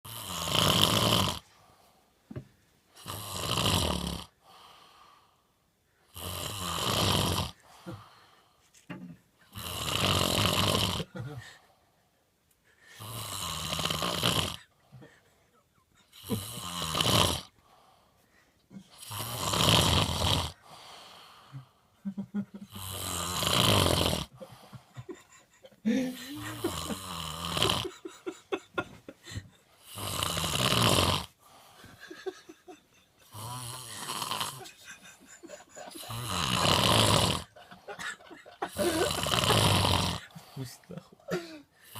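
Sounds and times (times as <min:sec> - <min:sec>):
rasping snores: 0:00.1 - 0:01.5, 0:03.0 - 0:05.2, 0:06.1 - 0:08.2, 0:09.5 - 0:11.2, 0:13.0 - 0:14.7, 0:16.1 - 0:17.6, 0:18.9 - 0:21.8, 0:22.7 - 0:25.0, 0:26.4 - 0:28.0, 0:29.8 - 0:31.7, 0:33.2 - 0:34.8, 0:35.8 - 0:37.6, 0:38.6 - 0:40.9.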